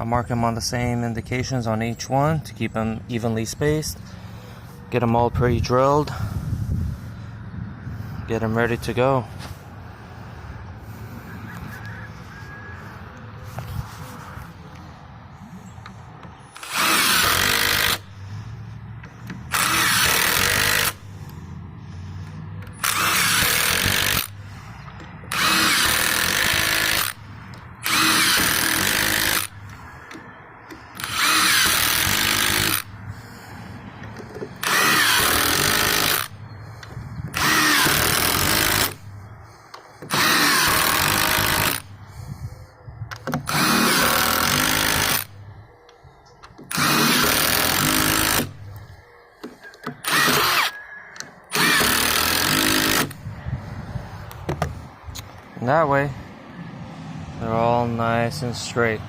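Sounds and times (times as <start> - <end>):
power drill driving screws: 16.5 - 18.1, 19.3 - 21.0, 22.6 - 24.4, 25.3 - 27.2, 27.8 - 29.6, 30.7 - 32.9, 34.3 - 36.3, 37.3 - 39.0, 40.0 - 41.9, 43.2 - 45.3, 46.6 - 48.6, 49.8 - 53.2.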